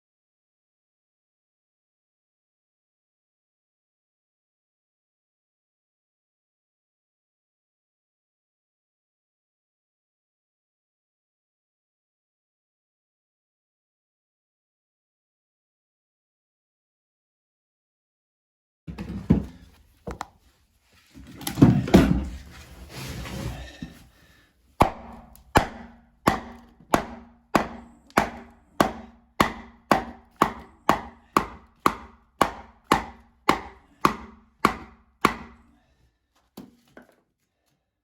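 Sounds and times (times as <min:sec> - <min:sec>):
knocking and scraping: 0:18.9 - 0:20.4, 0:21.0 - 0:24.1
hammer blows: 0:24.8 - 0:35.6.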